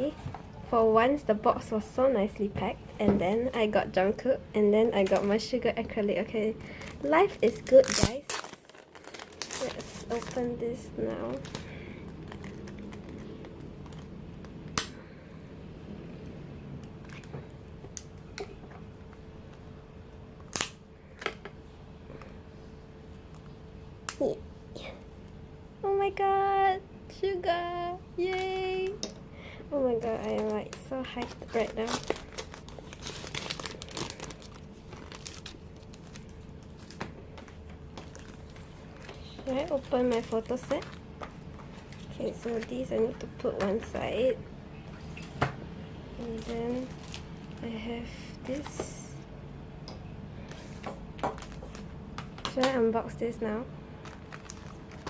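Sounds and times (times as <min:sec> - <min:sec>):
faint steady hum: 0:00.0 - 0:55.0
packaging crinkling and rustling: 0:06.7 - 0:14.8, 0:29.9 - 0:44.1, 0:46.2 - 0:47.8, 0:50.4 - 0:52.7, 0:54.0 - 0:55.0.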